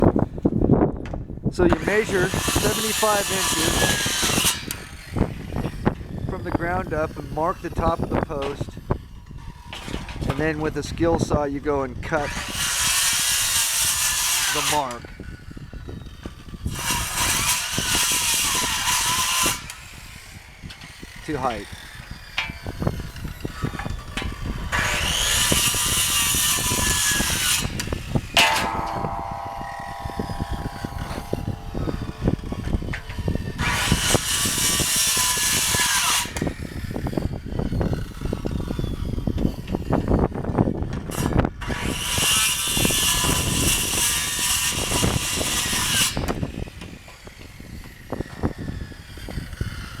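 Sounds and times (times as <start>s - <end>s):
circular saw cutting: 1.7s - 5.2s, 12.2s - 15.0s, 16.7s - 36.7s
saw blade whining down: 1.7s - 5.2s, 16.7s - 36.6s.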